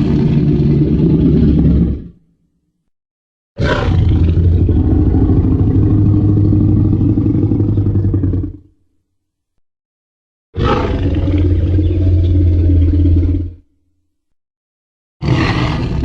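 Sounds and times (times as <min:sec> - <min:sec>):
deep dinosaur roar: 0:00.0 - 0:02.2, 0:03.6 - 0:08.8, 0:10.6 - 0:13.7, 0:15.2 - 0:16.0.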